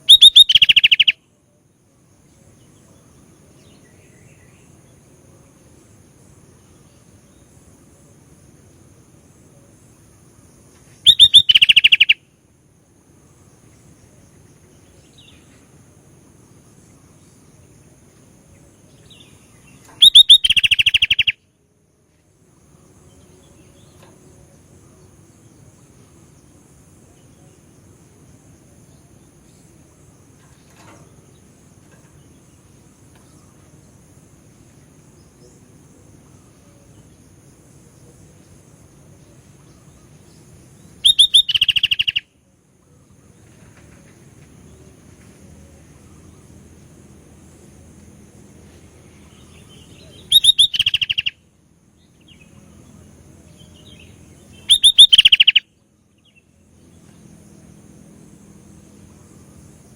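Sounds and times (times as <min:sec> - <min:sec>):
bulbul singing rapid notes: 0:00.0 - 0:01.2, 0:11.1 - 0:12.2, 0:41.1 - 0:42.2, 0:50.3 - 0:51.3, 0:54.6 - 0:55.6
faint background noise: 0:00.0 - 0:59.9.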